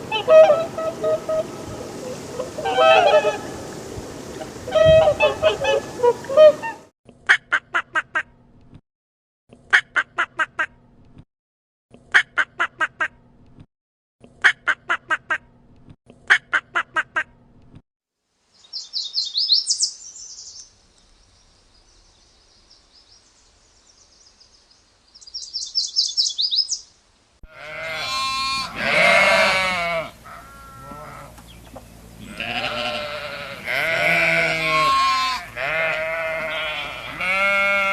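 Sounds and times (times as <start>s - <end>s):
sheep bleating: 27.5s - 31.3s, 32.2s - 37.9s.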